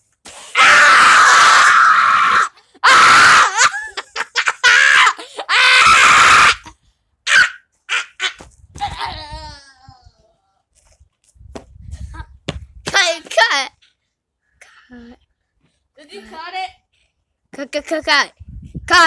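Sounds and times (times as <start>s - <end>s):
person screaming: 0.6s - 3.8s, 4.6s - 6.7s.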